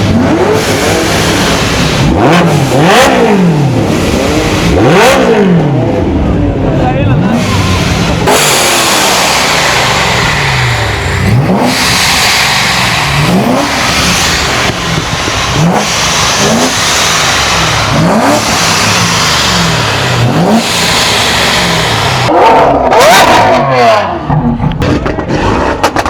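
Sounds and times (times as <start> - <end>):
car engines revving: 0.0 - 26.0.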